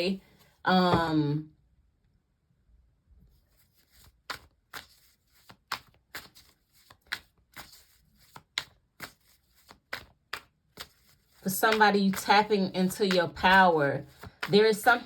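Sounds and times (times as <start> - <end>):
cards being shuffled: 3.4 - 15.0.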